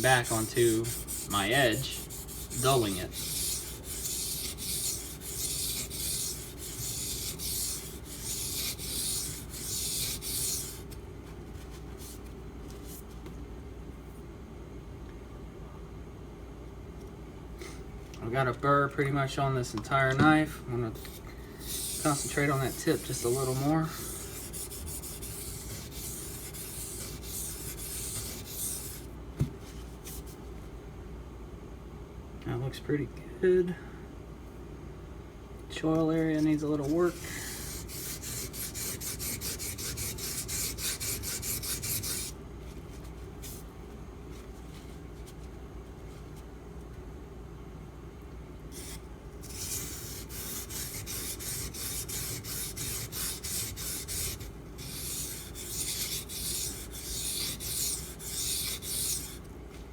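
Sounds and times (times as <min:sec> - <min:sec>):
knife scraping on whetstone: 0:00.0 - 0:10.8, 0:21.1 - 0:29.0, 0:48.8 - 0:59.4.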